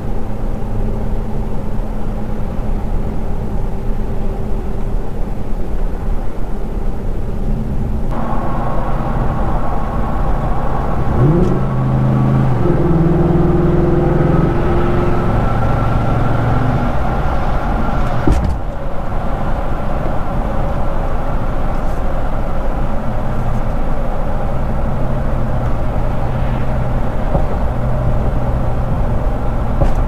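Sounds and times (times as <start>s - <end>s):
low exhaust hum: 0.0s - 30.0s
road noise: 0.0s - 30.0s
short thump: 18.2s - 18.7s, 27.3s - 27.8s, 29.8s - 30.0s.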